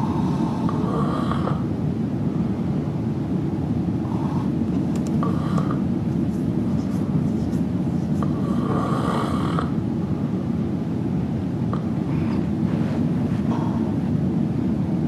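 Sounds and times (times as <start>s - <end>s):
man snoring softly: 0.0s - 1.7s, 5.2s - 5.9s, 8.2s - 9.8s
steady low rumble: 0.0s - 15.0s.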